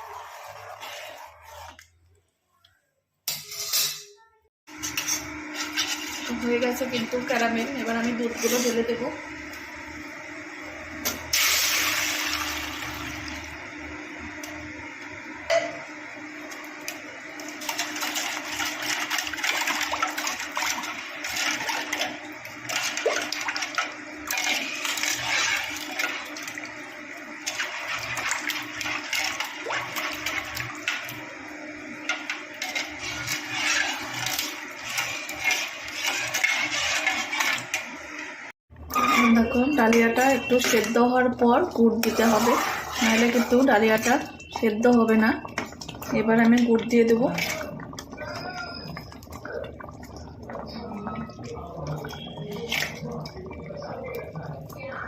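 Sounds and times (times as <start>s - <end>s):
bubbling with crackles: 11.5s - 38.0s, 38.8s - 55.0s
milk pouring: 40.4s - 55.0s.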